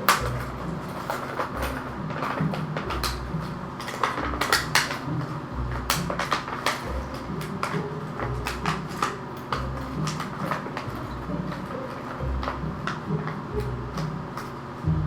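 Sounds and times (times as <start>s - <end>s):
packaging being handled: 0.0s - 14.7s
plastic ornaments clattering: 0.0s - 14.7s
low uneven hum: 0.0s - 15.0s.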